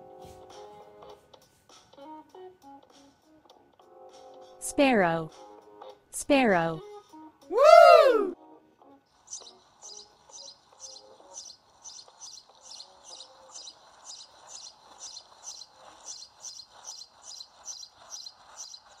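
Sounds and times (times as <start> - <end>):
sparrow chirping: 9.1 - 19.0.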